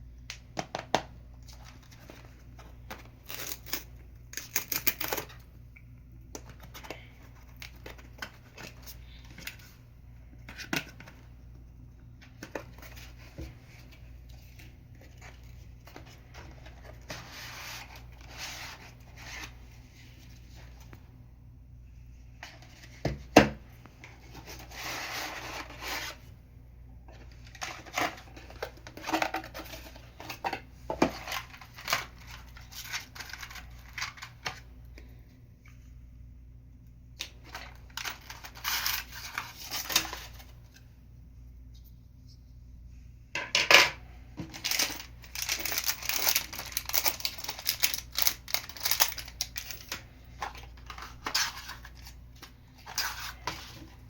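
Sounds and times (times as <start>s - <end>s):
cardboard and plastic rustling: 0.6s - 5.5s, 6.3s - 9.8s, 12.1s - 21.0s, 22.4s - 26.2s, 27.1s - 34.7s, 37.2s - 40.9s, 44.4s - 54.0s.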